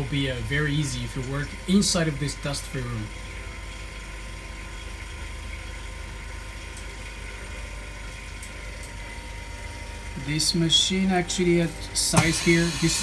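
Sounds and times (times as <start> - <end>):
machine hum: 11.7 - 13.0.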